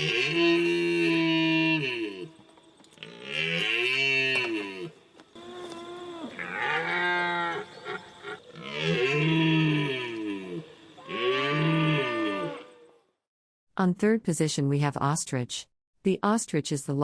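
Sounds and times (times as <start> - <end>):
stag bellowing: 3.0 - 12.8.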